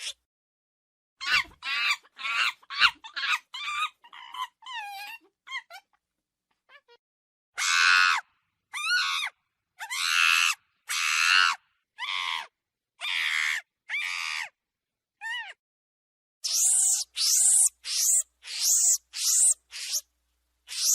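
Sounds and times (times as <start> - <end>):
monkey screeching: 1.2 - 5.9, 7.6 - 14.6, 15.2 - 15.6, 16.4 - 20.1, 20.7 - 20.9.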